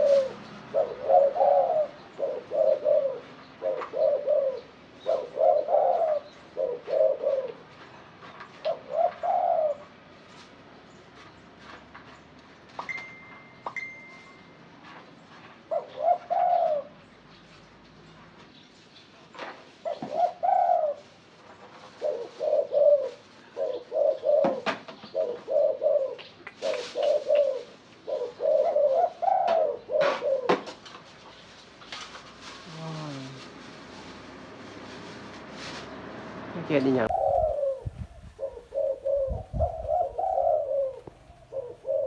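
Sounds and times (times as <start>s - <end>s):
dove cooing: 0.0s - 7.8s, 8.6s - 10.0s, 15.7s - 17.0s, 19.8s - 21.2s, 21.8s - 30.8s, 37.0s - 42.0s.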